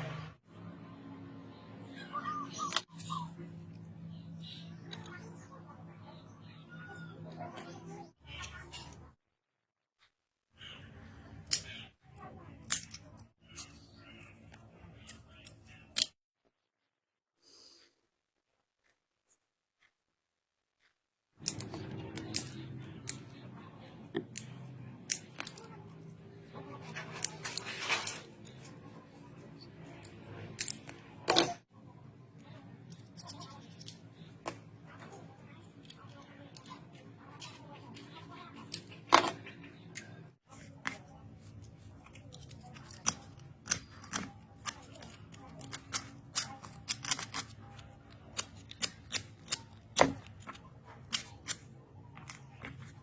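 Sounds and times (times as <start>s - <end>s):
clicks and snips of hand work: 32.4s - 40.2s, 41.9s - 53.0s.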